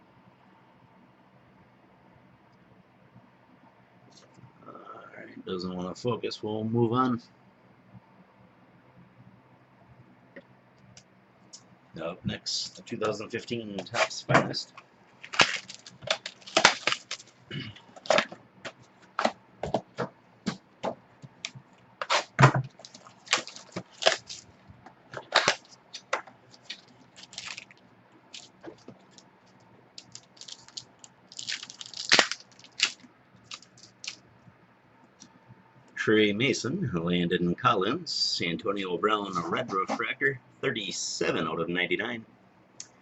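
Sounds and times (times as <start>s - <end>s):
packaging tearing: 15.2s - 18.4s, 22.0s - 24.4s, 25.2s - 27.8s, 28.4s - 29.2s, 30.0s - 34.2s
wrappers crinkling and snapping: 15.2s - 19.4s, 21.4s - 34.2s.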